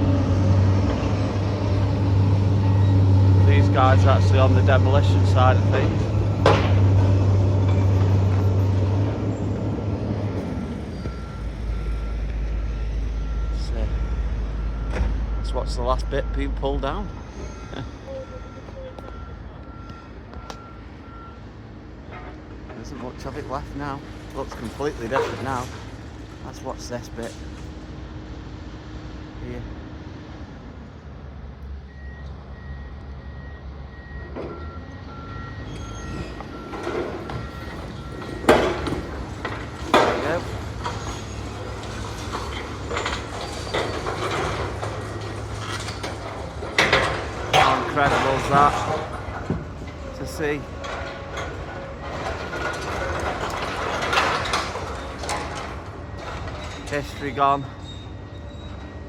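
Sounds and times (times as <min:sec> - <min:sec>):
debris crunching: 0:00.0 - 0:19.2, 0:35.7 - 0:58.0
diesel machinery running: 0:00.0 - 0:59.0
faint reversing beeps: 0:10.3 - 0:25.7, 0:31.8 - 0:59.0.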